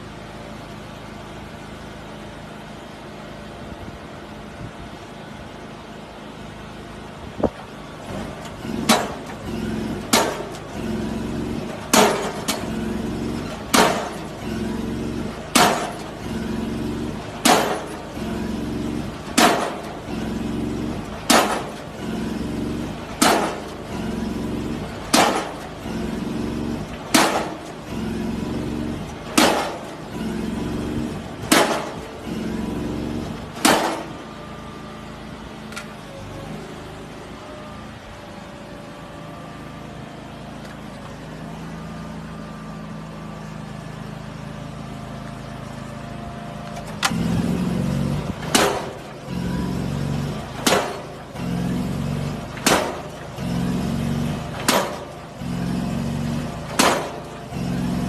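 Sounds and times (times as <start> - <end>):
machinery running: 7.4 - 58.0
pile hammer blows: 8.2 - 16.5, 17.3 - 34.3, 46.8 - 58.0.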